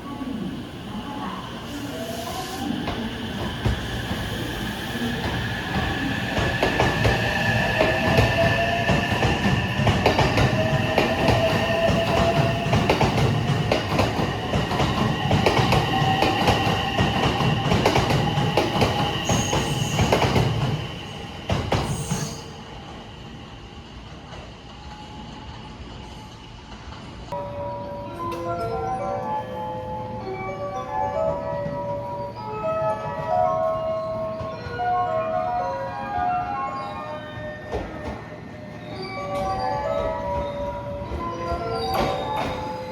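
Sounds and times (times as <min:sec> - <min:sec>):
train rumble: 0:00.0 - 0:23.1
train wheels clicking over rails: 0:02.9 - 0:22.3.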